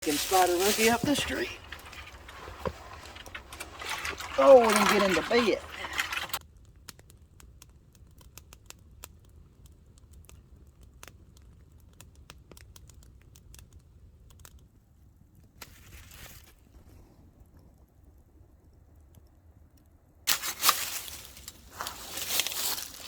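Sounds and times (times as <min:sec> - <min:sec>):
brief rustle: 0:00.0 - 0:06.4, 0:20.3 - 0:23.0
faint small clicks and crackles: 0:00.0 - 0:23.0.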